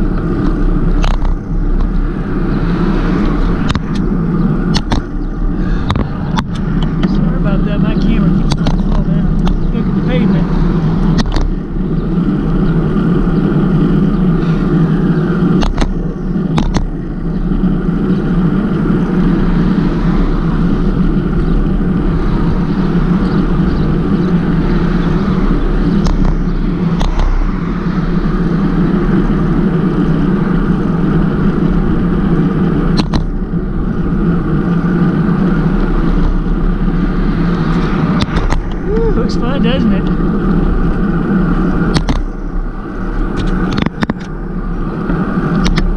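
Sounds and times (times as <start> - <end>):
bicycle road noise: 0.0 - 45.9
wind rumble on microphone: 0.0 - 45.9
sharp clicks: 4.7 - 5.1, 8.4 - 9.6, 15.6 - 16.9.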